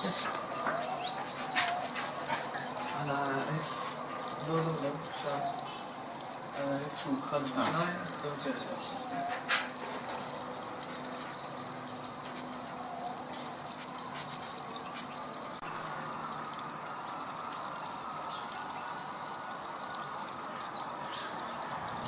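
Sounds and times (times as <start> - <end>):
water running: 0.0 - 22.0.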